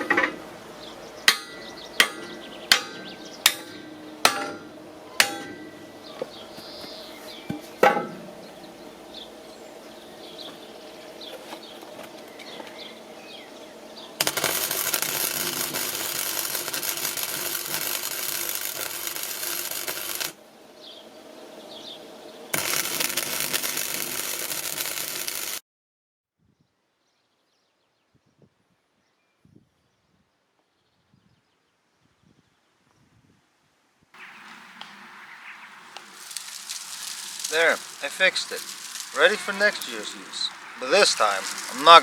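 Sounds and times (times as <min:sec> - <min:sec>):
sharp metal clang: 0:01.3 - 0:05.8
metalworking machine noise: 0:36.0 - 0:42.0.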